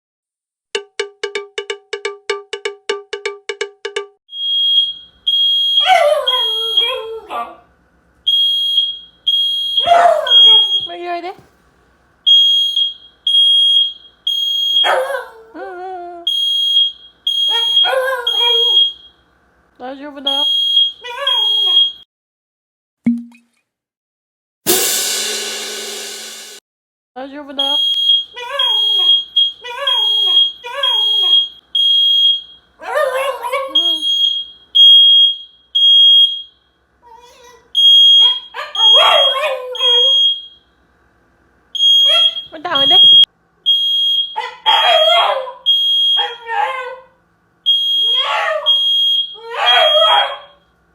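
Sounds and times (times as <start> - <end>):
smoke alarm beeping: 4.3 - 7.1, 8.2 - 11.3, 12.2 - 15.0, 16.3 - 19.3, 20.3 - 22.0, 27.6 - 32.8, 33.7 - 36.8, 37.8 - 40.8, 41.8 - 46.5, 47.6 - 50.7
dog whining: 5.8 - 7.6, 9.8 - 11.0, 14.8 - 16.3, 17.5 - 19.0, 28.4 - 31.5, 32.8 - 34.0, 37.0 - 40.2, 42.0 - 42.5, 44.3 - 47.1, 48.0 - 50.6.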